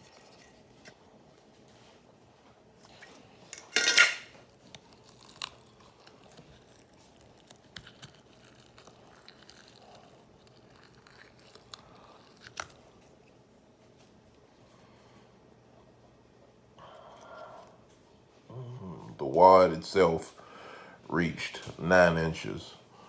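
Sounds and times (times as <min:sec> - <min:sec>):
plastic crinkling: 0:04.4 - 0:13.3.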